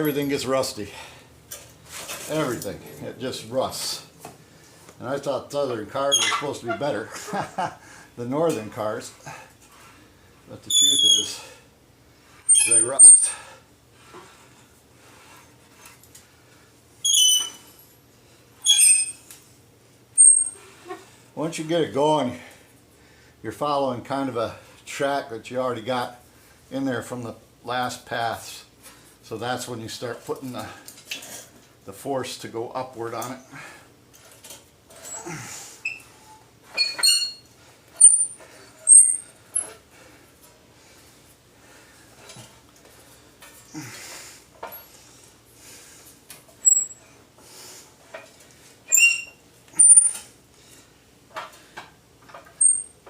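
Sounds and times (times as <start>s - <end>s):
bead roller squeaking: 6.1s - 6.6s, 10.7s - 11.4s, 12.5s - 13.3s, 17.0s - 17.7s, 18.6s - 19.2s, 20.2s - 20.6s, 36.8s - 39.3s, 46.6s - 47.0s, 48.9s - 50.2s.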